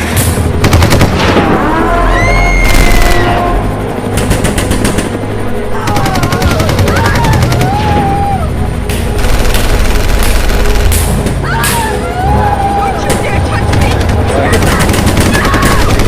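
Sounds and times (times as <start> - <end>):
automatic gunfire bursts: 13.7 - 16.0.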